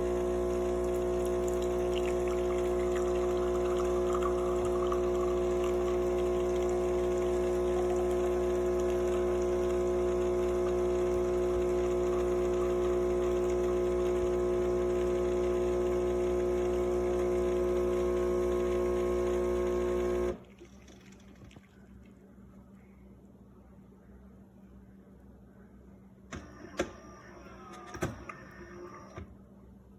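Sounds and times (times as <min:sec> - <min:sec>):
espresso machine pump humming: 0:00.0 - 0:20.4.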